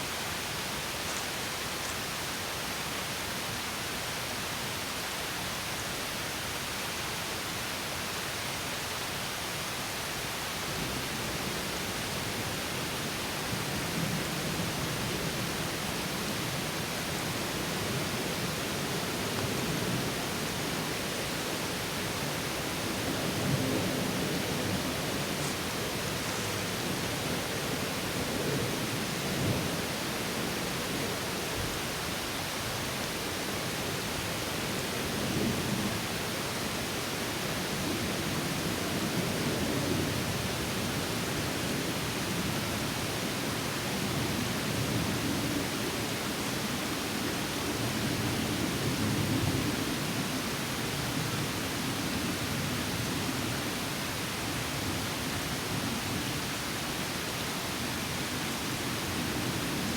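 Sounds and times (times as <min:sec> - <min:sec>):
water rushing over small waterfall: 0:49.6 - 0:59.9.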